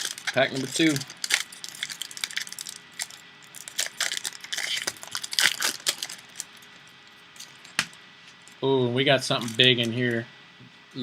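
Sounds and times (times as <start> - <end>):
card pack crinkling and rustling: 0.0 - 6.7, 9.3 - 10.1.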